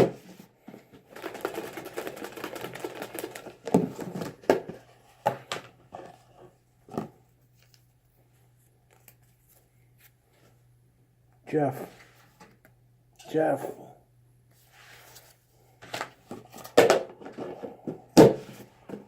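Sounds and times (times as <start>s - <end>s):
paper tickets rustling: 1.1s - 3.6s.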